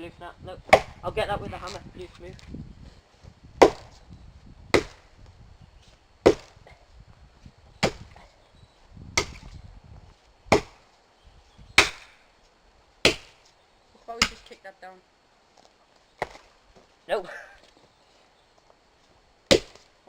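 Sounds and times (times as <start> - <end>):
axe chopping tree trunk: 0.7 - 1.0, 3.6 - 4.0, 4.7 - 5.1, 6.2 - 6.6, 7.8 - 8.2, 9.1 - 9.6, 10.5 - 10.9, 11.8 - 12.3, 13.0 - 13.5, 14.2 - 14.6, 16.2 - 16.5, 19.5 - 19.9.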